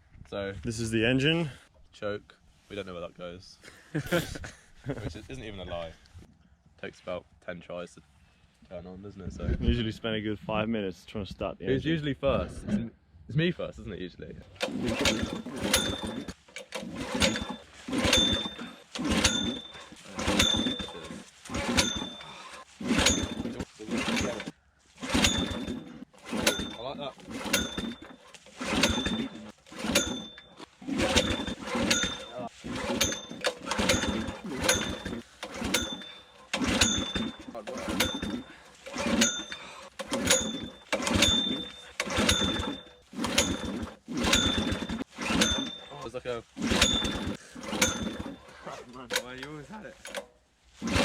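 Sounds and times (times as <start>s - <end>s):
small engine pull-start attempts: 5.4s - 6.1s, 14.4s - 51.0s
pneumatic snips cutting: 14.5s - 51.0s.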